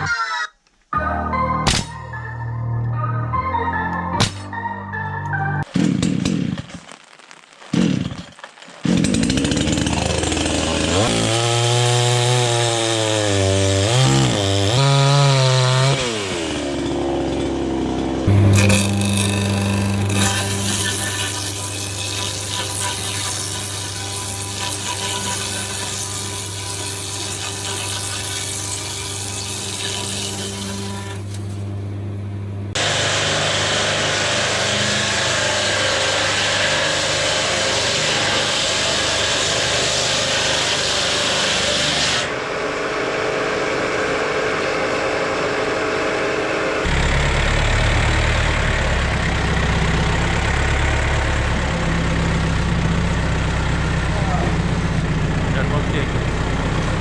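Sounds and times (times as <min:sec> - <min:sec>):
sawmill machinery humming: 0:09.0 - 0:57.0
hissy sawing noise: 0:18.3 - 0:31.7, 0:32.7 - 0:42.6
low engine rumble: 0:46.9 - 0:57.0.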